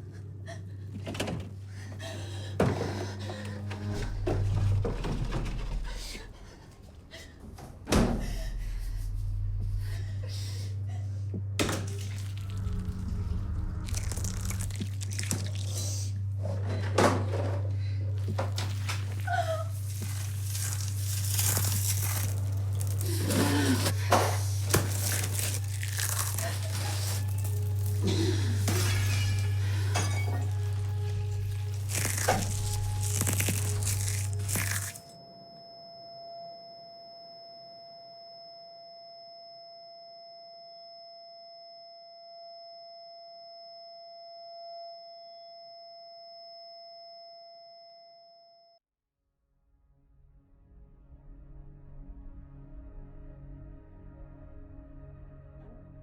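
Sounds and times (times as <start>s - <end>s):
low hum: 7.9s - 42.9s
cracks clinks and crunching: 13.8s - 15.9s, 18.4s - 24.0s, 24.6s - 35.1s
steady high ringing tone: 34.6s - 48.8s.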